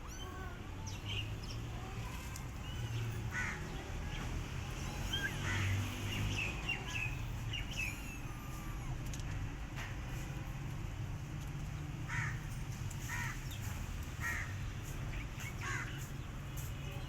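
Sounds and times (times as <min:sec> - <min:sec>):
kittens mewing: 0:00.0 - 0:09.3.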